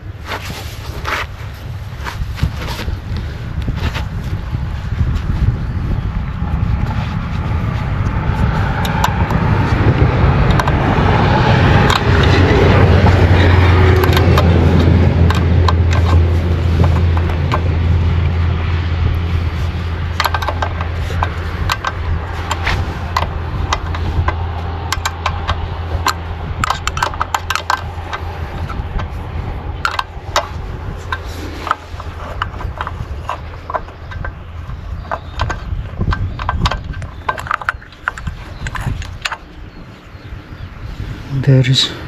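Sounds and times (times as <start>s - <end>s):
low hum: 0.0s - 42.0s.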